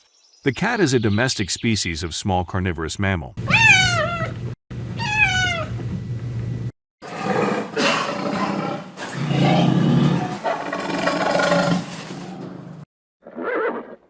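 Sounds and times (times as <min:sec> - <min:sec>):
cat meowing: 0:03.4 - 0:04.4, 0:05.0 - 0:05.8.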